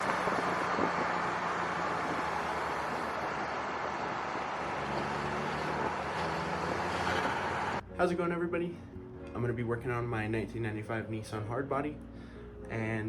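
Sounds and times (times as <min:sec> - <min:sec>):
vehicle engine running: 0:00.0 - 0:07.8.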